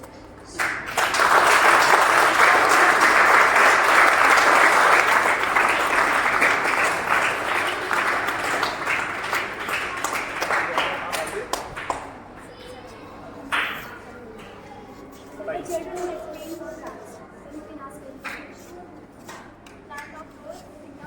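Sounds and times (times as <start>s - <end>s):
crowd applauding: 0.5s - 12.2s.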